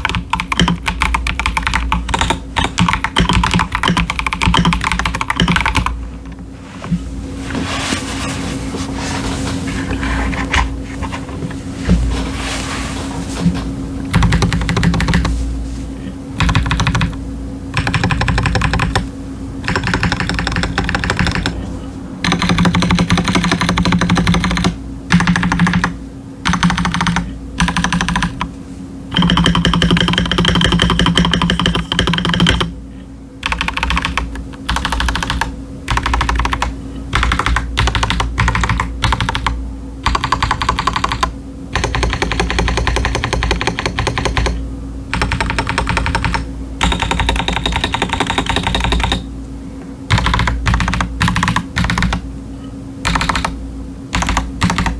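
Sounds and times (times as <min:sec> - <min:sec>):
mechanical keyboard typing: 0:00.0 - 0:06.4, 0:14.1 - 0:15.3, 0:16.4 - 0:21.6, 0:22.2 - 0:28.5, 0:29.1 - 0:32.7, 0:33.4 - 0:49.2, 0:50.1 - 0:52.2, 0:53.0 - 0:54.9
faint steady hum: 0:00.0 - 0:54.9.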